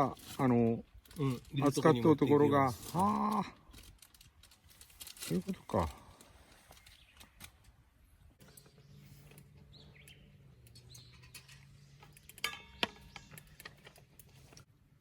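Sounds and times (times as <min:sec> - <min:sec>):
faint bird chirps: 0:06.4 - 0:13.8.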